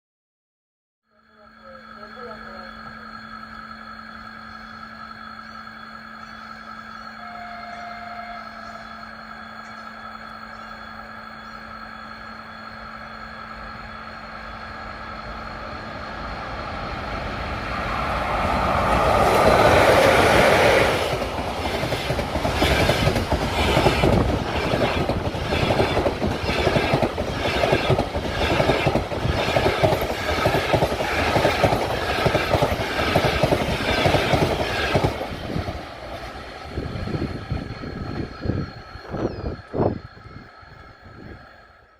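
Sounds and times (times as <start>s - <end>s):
train passing rush: 1.4s - 41.9s
train wheels clattering: 18.9s - 35.9s.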